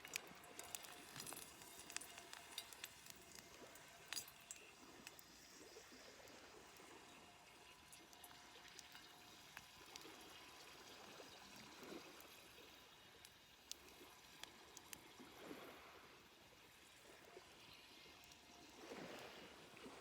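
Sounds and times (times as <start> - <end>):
campfire crackling: 0.0 - 5.2
soft steady hiss: 0.0 - 20.0.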